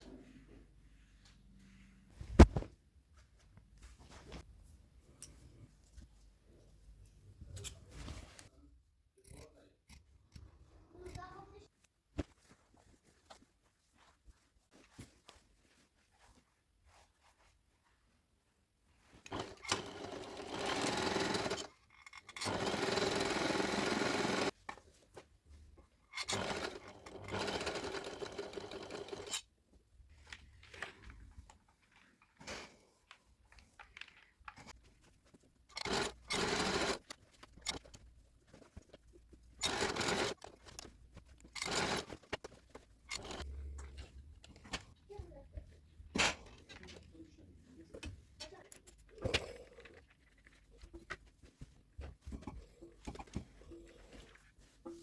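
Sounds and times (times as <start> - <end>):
sewing machine stitching: 19.2 - 24.6, 26.2 - 29.4, 35.7 - 37.9, 39.5 - 44.7.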